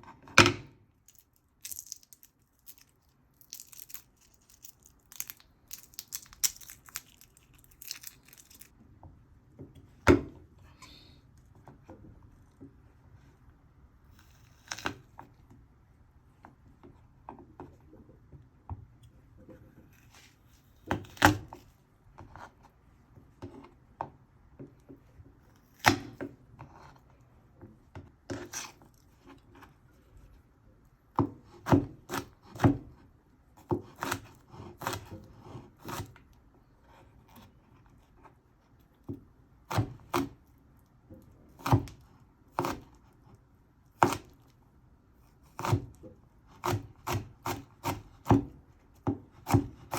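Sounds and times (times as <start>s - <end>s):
rustling and tearing: 1.0s - 8.7s.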